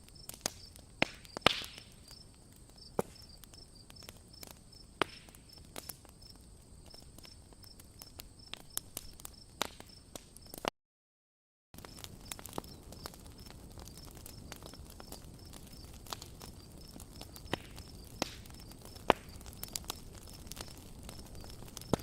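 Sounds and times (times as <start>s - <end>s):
campfire crackling and popping: 0.0s - 10.7s, 11.8s - 22.0s
crickets chirping: 12.6s - 22.0s.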